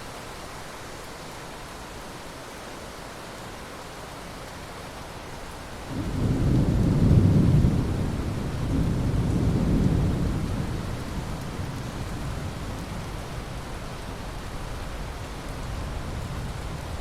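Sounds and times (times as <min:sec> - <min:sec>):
steady rain: 0:00.0 - 0:17.0
rolling thunder: 0:05.9 - 0:13.9.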